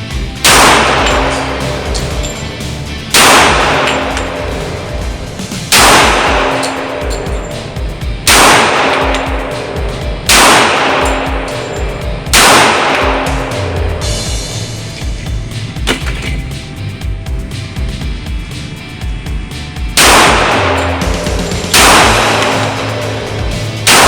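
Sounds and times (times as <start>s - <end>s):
pistol shots echoing: 0.4s - 2.4s, 3.1s - 4.9s, 5.7s - 14.0s, 20.0s - 21.1s, 21.7s - 23.2s.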